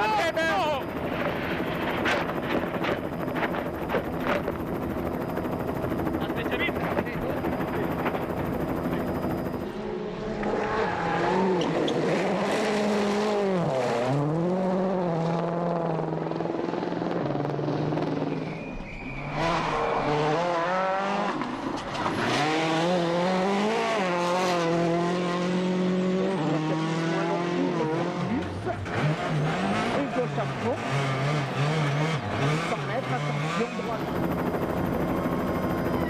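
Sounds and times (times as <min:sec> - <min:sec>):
rally car engine revving: 0:09.7 - 0:18.4, 0:19.3 - 0:34.0.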